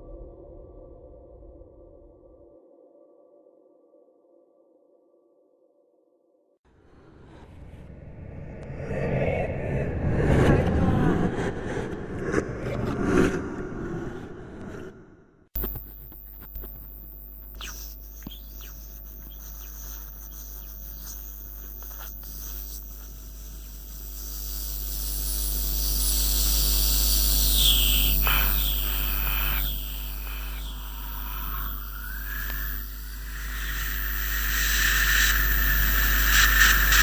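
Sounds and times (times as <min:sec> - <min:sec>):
eerie low drone: 0:06.8 - 0:15.2.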